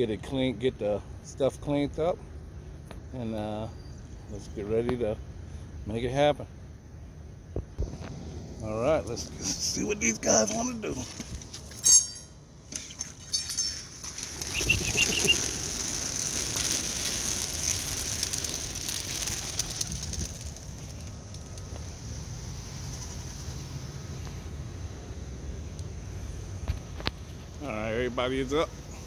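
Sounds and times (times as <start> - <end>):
pigeons flapping wings: 14.0 - 21.9.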